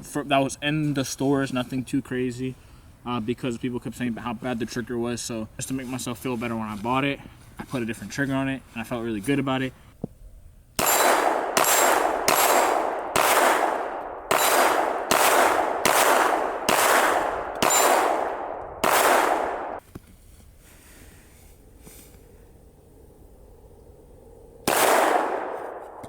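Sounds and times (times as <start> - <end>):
pistol shots with ringing: 10.8 - 19.8, 24.6 - 26.0.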